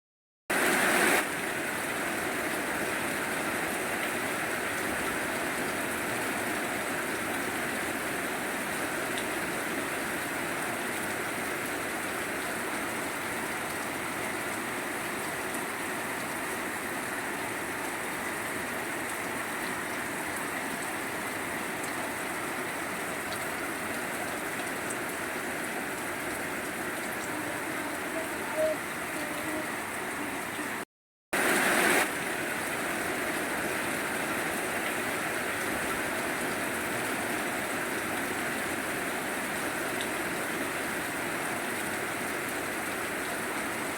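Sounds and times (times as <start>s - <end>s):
steady rainfall: 0.5s - 43.9s.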